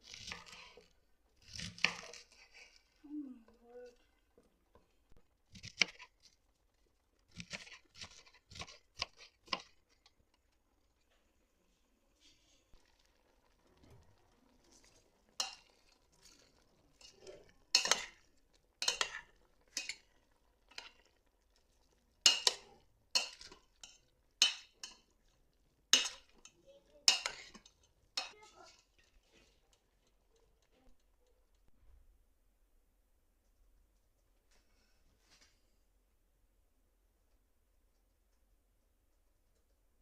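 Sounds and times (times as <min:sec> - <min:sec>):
dishes and cutlery clinking: 0:16.9 - 0:20.1, 0:22.2 - 0:25.1, 0:25.9 - 0:29.7.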